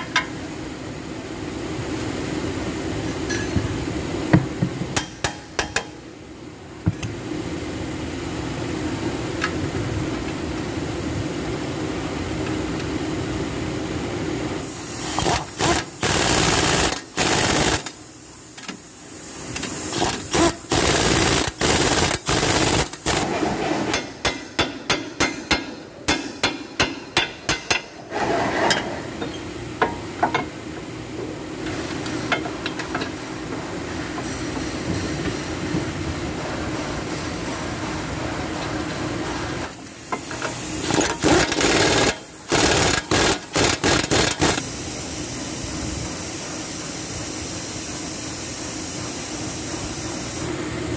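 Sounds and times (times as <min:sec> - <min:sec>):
steady hum: 0:00.0 - 0:50.9
pneumatic impact wrench bursts: 0:14.6 - 0:23.5, 0:40.0 - 0:44.9.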